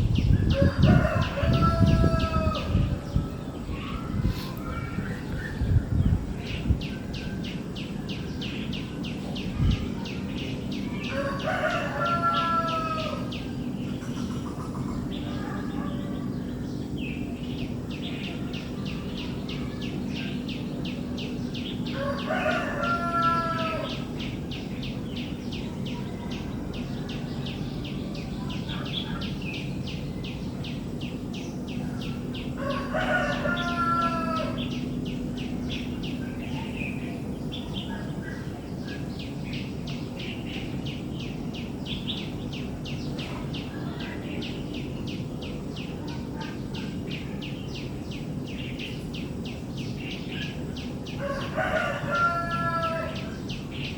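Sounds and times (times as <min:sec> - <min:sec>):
steady low hum: 0:00.0 - 0:53.9
rooster crowing: 0:00.5 - 0:02.8, 0:11.1 - 0:13.3, 0:21.9 - 0:24.0, 0:32.6 - 0:34.7, 0:51.2 - 0:53.4.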